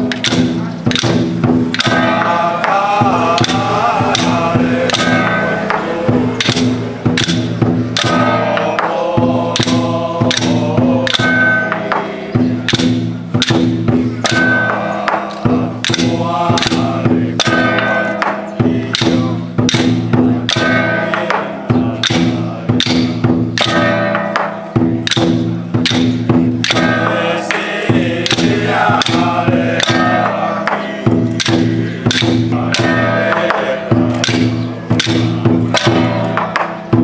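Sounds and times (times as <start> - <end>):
sharp percussion strokes: 0.0 - 37.0.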